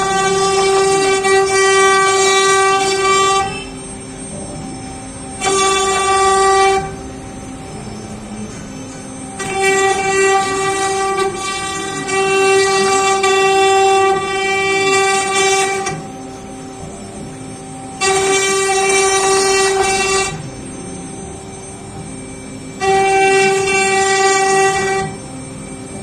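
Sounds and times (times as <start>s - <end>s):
router spindle whining: 0.0s - 26.0s.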